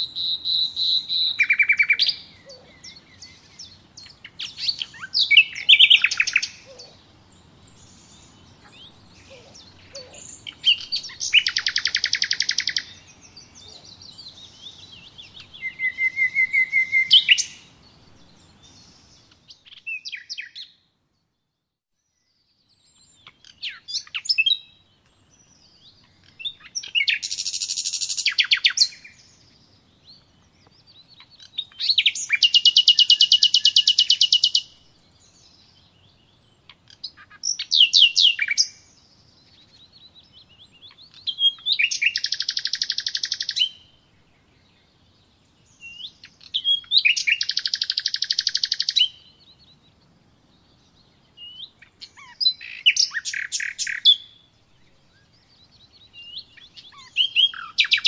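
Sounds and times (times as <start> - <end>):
small bird trilling: 8.6 - 13.0, 41.3 - 43.7, 46.5 - 49.1.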